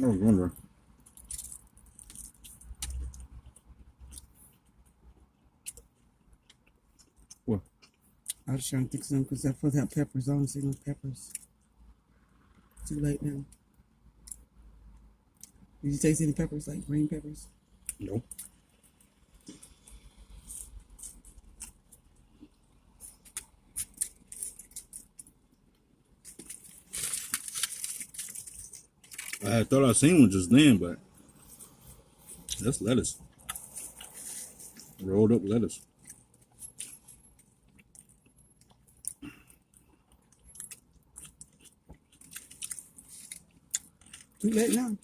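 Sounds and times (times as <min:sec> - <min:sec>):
person chewing a burger: 0:00.5 - 0:08.4, 0:17.8 - 0:29.4, 0:31.0 - 0:35.0, 0:35.8 - 0:44.8.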